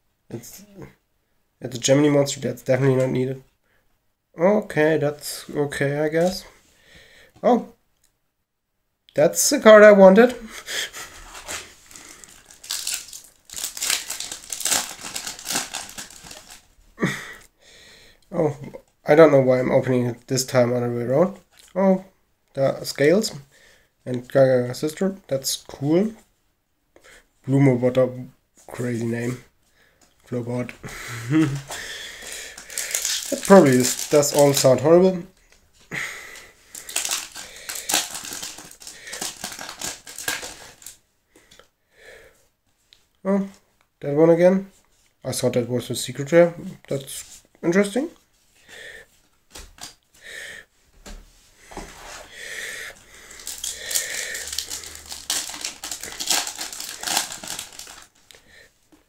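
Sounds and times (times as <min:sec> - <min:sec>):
foil wrapper crinkling and tearing: 0:11.4 - 0:16.7, 0:31.4 - 0:35.0, 0:36.7 - 0:41.0, 0:52.8 - 0:58.4.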